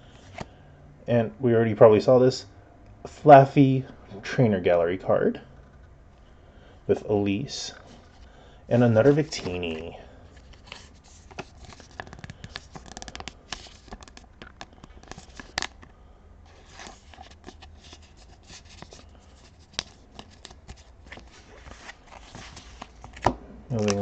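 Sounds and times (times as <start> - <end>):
cards rustling and tapping: 8.8 - 24.0.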